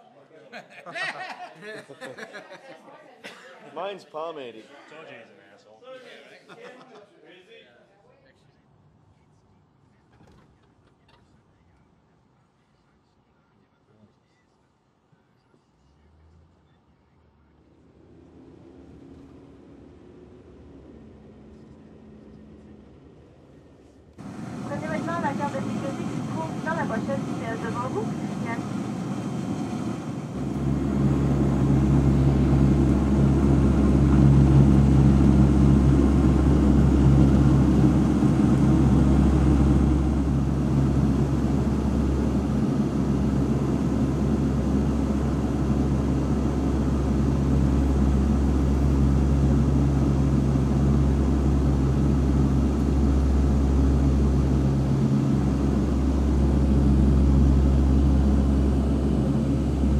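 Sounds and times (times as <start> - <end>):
propeller engines droning: 17.8 - 23.6, 24.2 - 59.9.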